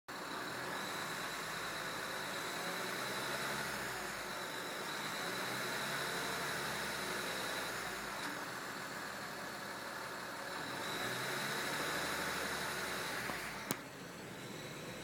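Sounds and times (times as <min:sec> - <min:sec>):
car engine idling: 0:06.4 - 0:10.8.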